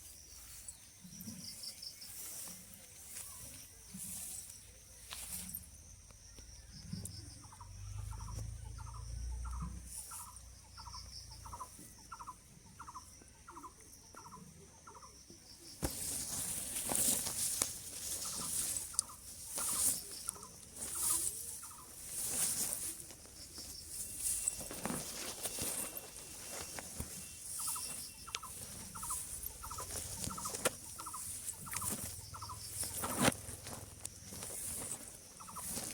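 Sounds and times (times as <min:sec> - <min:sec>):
high thin bird chirps: 0:06.4 - 0:33.6, 0:34.3 - 0:35.9
rustling hiss: 0:15.8 - 0:35.9.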